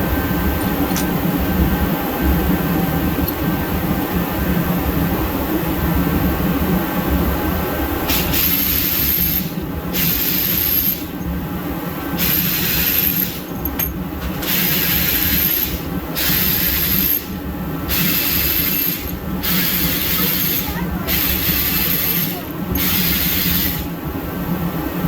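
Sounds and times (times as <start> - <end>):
cordless ratchet running: 8.1 - 11.3, 12.2 - 24.0.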